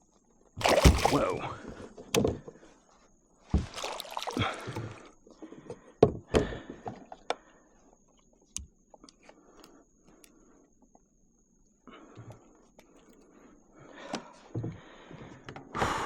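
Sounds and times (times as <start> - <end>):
knocks and thuds against kayak hull: 0.6 - 1.3, 3.6 - 5.0
water splashing: 0.6 - 1.4, 3.6 - 5.1.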